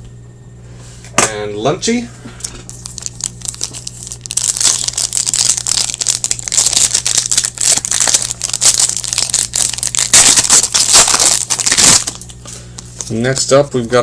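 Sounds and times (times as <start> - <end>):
wrapper crinkling and tearing: 2.7 - 12.4.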